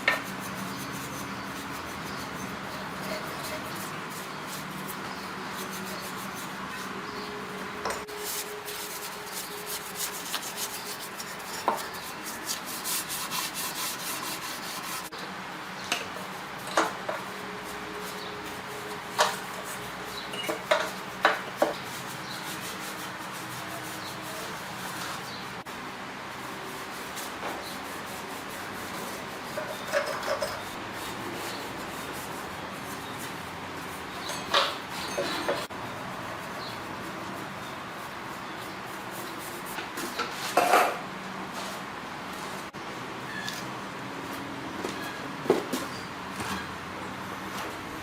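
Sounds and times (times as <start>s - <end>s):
rough rubbing on metal: 0.0s - 7.3s, 8.0s - 15.1s.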